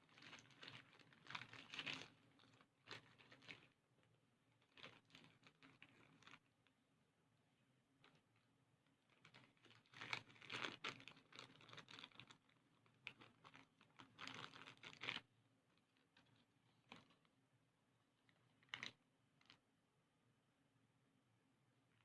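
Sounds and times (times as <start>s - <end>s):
clicking and rustling of handling: 9.1s - 17.3s.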